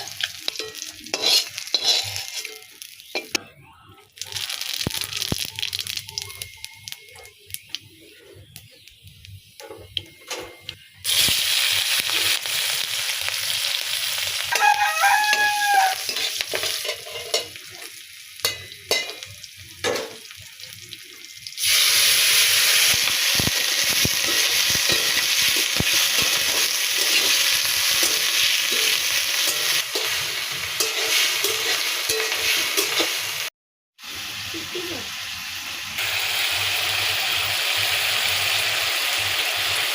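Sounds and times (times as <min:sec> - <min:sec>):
food sizzling in hot oil: 0:00.0 - 0:03.4, 0:04.0 - 0:09.5, 0:11.0 - 0:39.9
spoon scraping pan: 0:00.2 - 0:03.4, 0:15.3 - 0:17.6, 0:23.4 - 0:33.2.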